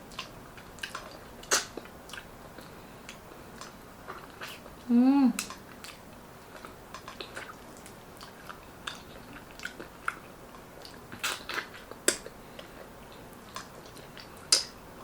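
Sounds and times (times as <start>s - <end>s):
wet mouth clicks and smacks: 0.1s - 2.3s, 10.8s - 12.3s, 13.6s - 14.8s
chewing: 0.1s - 14.8s.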